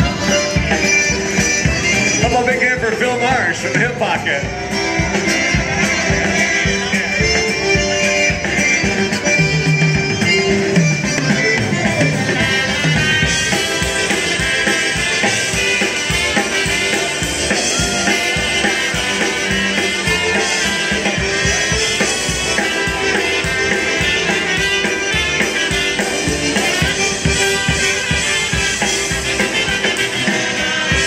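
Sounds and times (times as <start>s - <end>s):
drum kit beat: 0.0s - 31.0s
polka band playing: 0.0s - 31.0s.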